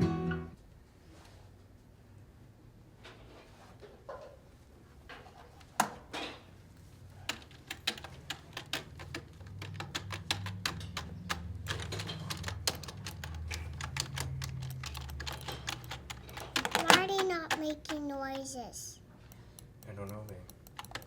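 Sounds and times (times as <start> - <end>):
keys clicking: 7.3 - 18.1, 19.4 - 21.0.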